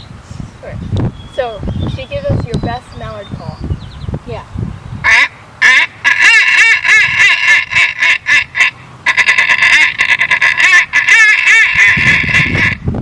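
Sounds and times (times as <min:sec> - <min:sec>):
person imitating duck quacks: 0:05.0 - 0:12.8.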